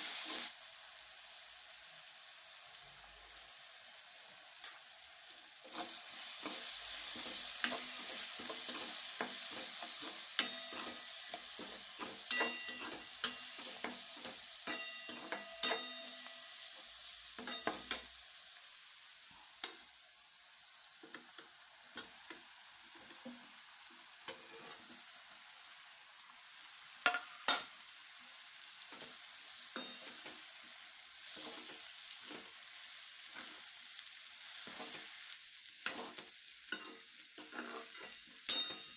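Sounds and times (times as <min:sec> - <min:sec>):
food sizzling in hot oil: 0:00.0 - 0:38.9
metal spatula clinking on pan: 0:07.2 - 0:16.6, 0:17.4 - 0:18.1, 0:27.0 - 0:27.7, 0:29.8 - 0:30.3, 0:35.8 - 0:38.9.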